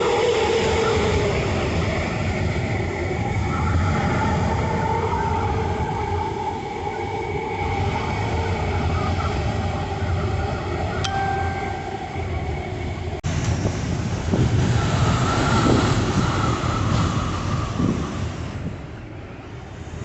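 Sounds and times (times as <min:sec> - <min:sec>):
strong wind howling: 0:00.0 - 0:20.0.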